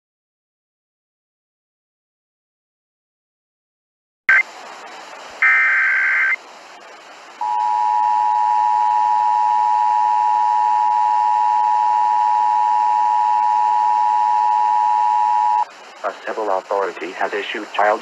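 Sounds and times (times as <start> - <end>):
loud two-tone attention signal: 5.4 - 6.4, 7.4 - 15.7
screeching digital data burst: 5.4 - 6.4.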